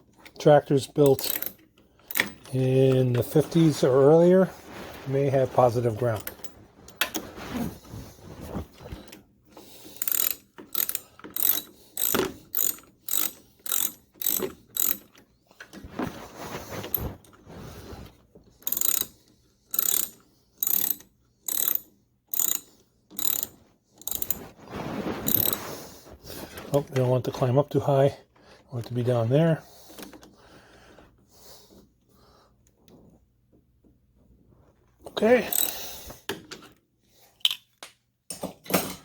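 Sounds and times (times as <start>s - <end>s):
ratchet wrench clicking: 1.1s - 2.4s, 10.0s - 15.2s, 18.6s - 24.4s, 35.5s - 35.8s.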